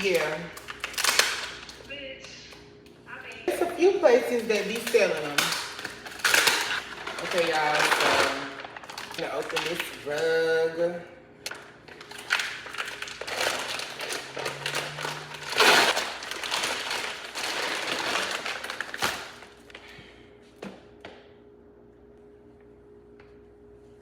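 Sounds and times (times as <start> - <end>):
packaging crinkling and rustling: 0.0 - 1.8, 4.3 - 10.7, 11.5 - 20.0
loud packaging burst: 4.8 - 9.9, 12.0 - 19.6.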